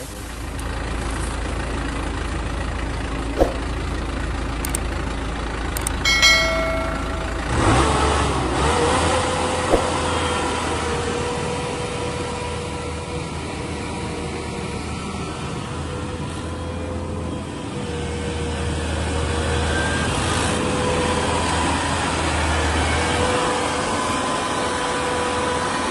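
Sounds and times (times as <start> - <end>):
combine harvester engine running: 0.0 - 8.2
short high-pitched tone: 6.0 - 7.8.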